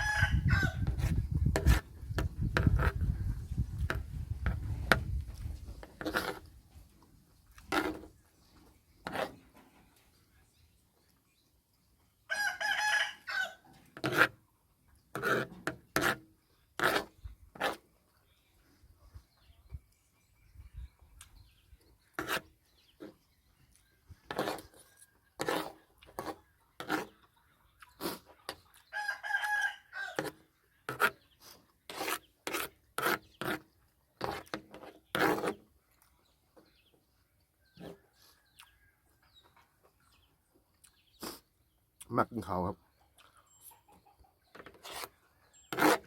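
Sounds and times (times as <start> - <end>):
rooster crowing: 0.0 - 0.9, 12.3 - 13.6, 29.0 - 30.3
chewing and mouth noises: 38.4 - 38.7, 43.1 - 43.5.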